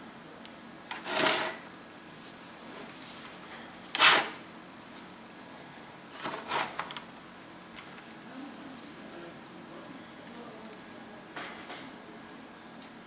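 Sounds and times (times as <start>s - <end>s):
low room hiss: 0.0s - 13.0s
scraping handling noises: 0.9s - 1.6s, 2.3s - 5.1s, 6.1s - 7.0s.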